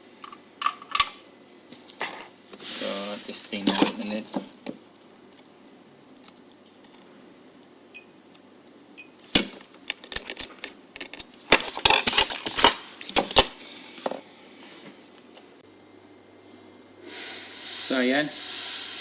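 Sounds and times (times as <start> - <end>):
metal parts clicking and clinking: 9.3 - 13.5.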